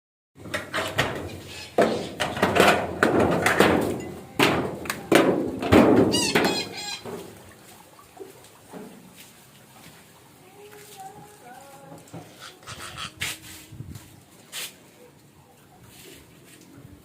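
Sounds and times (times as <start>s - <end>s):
parakeet squawking: 1.3s - 1.8s, 6.1s - 7.1s, 12.4s - 13.2s.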